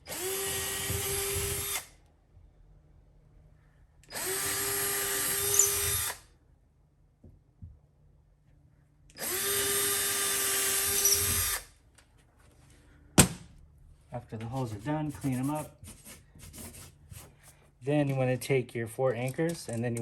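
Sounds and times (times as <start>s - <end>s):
power drill drilling into wall: 0.0s - 1.9s, 4.1s - 6.2s, 9.2s - 11.7s.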